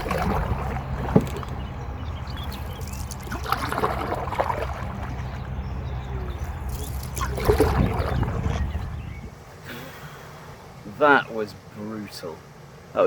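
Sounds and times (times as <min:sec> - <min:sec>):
paddle splashing water: 0:00.0 - 0:09.5
steady low rumble: 0:00.0 - 0:09.5.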